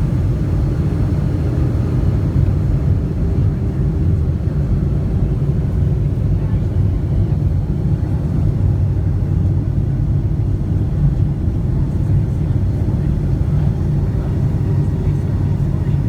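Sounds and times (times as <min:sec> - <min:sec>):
airliner cabin engine rumble: 0:00.0 - 0:16.0.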